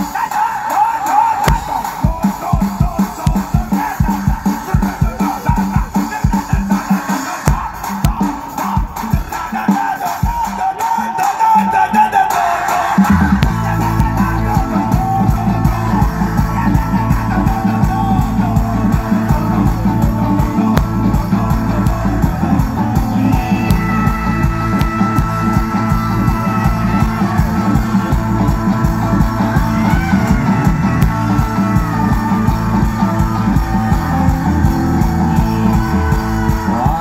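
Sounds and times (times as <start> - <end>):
drums: 0.0 - 37.0
guitar: 0.0 - 37.0
bass: 13.0 - 37.0
long held high notes: 13.2 - 37.0.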